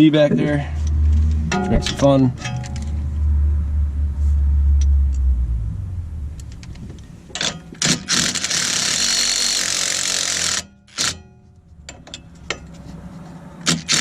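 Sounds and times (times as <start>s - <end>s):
power tool running: 7.8s - 10.6s.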